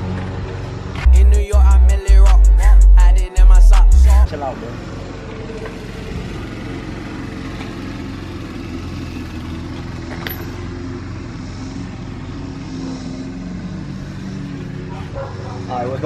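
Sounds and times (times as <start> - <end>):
engine running steadily: 0.0 - 16.0.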